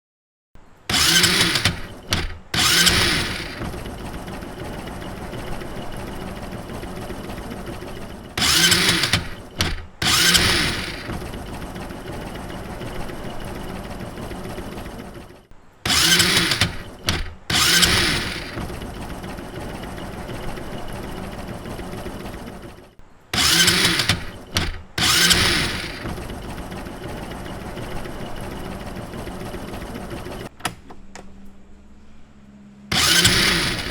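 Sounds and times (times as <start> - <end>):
motorcycle engine idling: 0.9 - 30.5
motorcycle engine revving: 0.9 - 30.5, 32.9 - 33.9
motorcycle engine starting: 0.9 - 30.6, 32.8 - 33.9.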